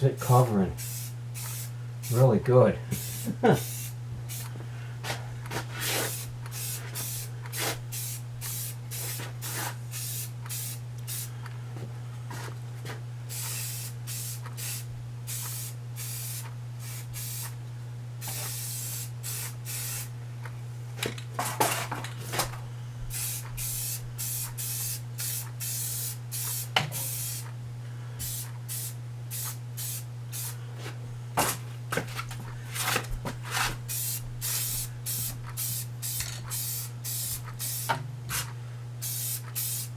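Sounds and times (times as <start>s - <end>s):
steady low hum: 0.0s - 39.9s
spray paint can hissing: 0.8s - 1.7s, 3.0s - 4.5s, 5.8s - 11.3s, 13.3s - 17.5s, 18.2s - 20.1s, 23.1s - 27.5s, 28.2s - 30.6s, 33.9s - 37.9s, 39.0s - 39.9s.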